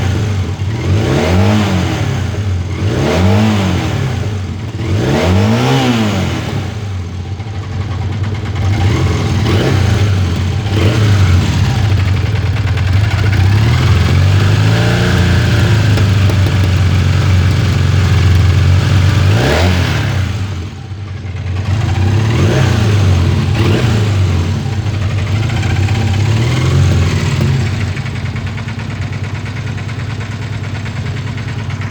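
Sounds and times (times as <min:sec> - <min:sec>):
motorcycle engine idling and revving: 0:00.0 - 0:31.9.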